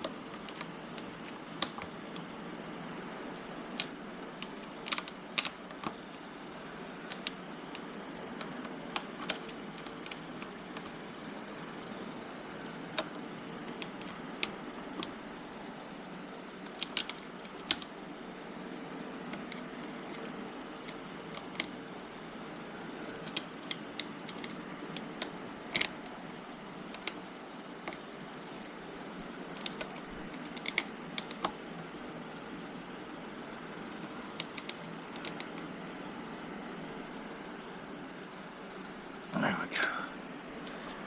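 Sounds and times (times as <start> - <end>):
steady background noise: 0.0 - 41.0.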